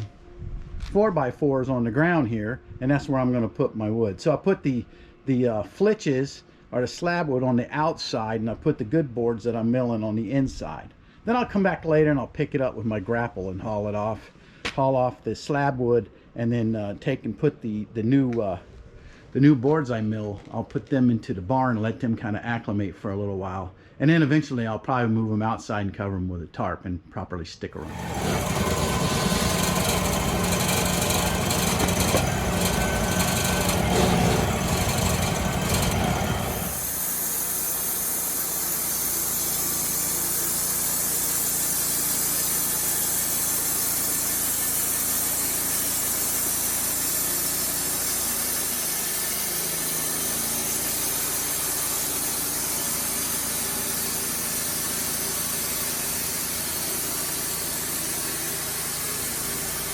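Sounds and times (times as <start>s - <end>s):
band sawmill running: 27.8s - 59.9s.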